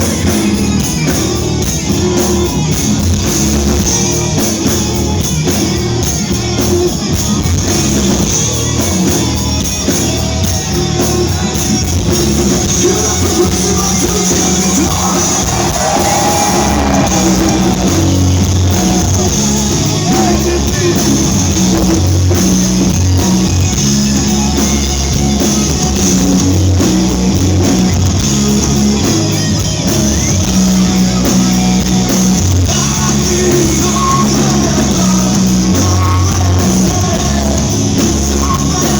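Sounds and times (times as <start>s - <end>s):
bass guitar: 0.0s - 38.9s
distorted electric guitar: 0.0s - 38.9s
drums: 0.0s - 38.9s
shouted lead vocal: 12.8s - 21.6s.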